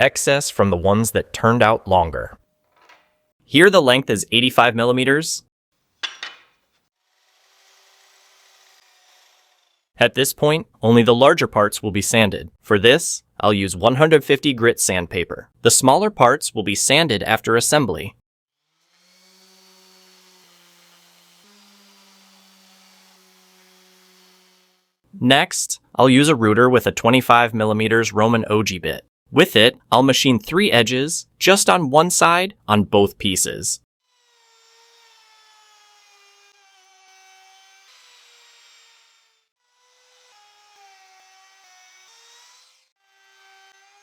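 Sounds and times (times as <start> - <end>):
electric sander on wood: 7.0 - 9.9, 18.6 - 25.0, 34.1 - 44.0.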